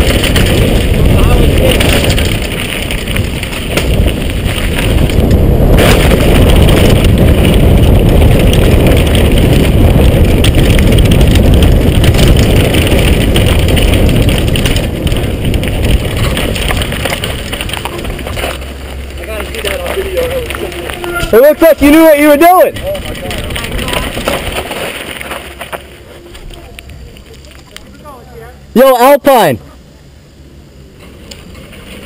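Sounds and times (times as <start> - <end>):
wind rush on microphone: 0.0 - 19.2
bike rattling over rough trail: 0.0 - 29.5, 30.7 - 32.0
bike tyres rumbling: 0.0 - 29.6, 30.2 - 32.0.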